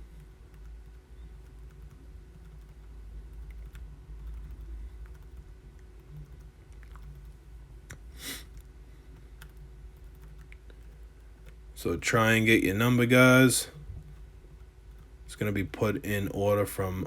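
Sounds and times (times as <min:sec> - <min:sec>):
computer keyboard typing: 0:00.0 - 0:07.4, 0:08.5 - 0:11.6
low electrical hum: 0:00.0 - 0:17.0
short hiss: 0:08.2 - 0:08.5.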